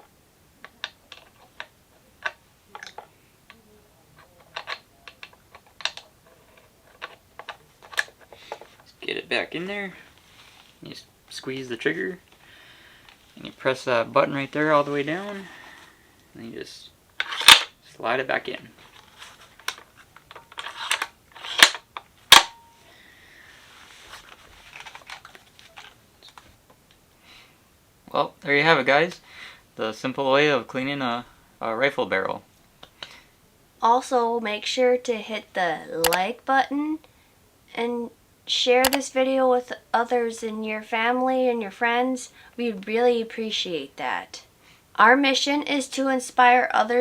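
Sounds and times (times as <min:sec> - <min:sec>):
rifle bolt clicks and clacks: 0:17.2 - 0:17.7, 0:19.7 - 0:22.5.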